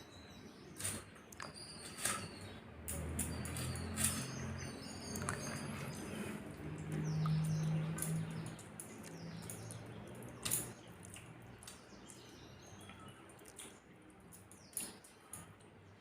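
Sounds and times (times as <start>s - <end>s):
wet chewing clicks and smacks: 5.1s - 5.9s, 6.5s - 15.8s.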